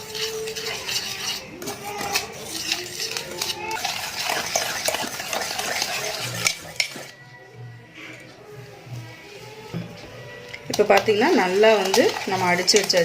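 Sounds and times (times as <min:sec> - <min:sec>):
whisk clicking and scraping bowl: 0:00.0 - 0:07.2, 0:10.4 - 0:13.0.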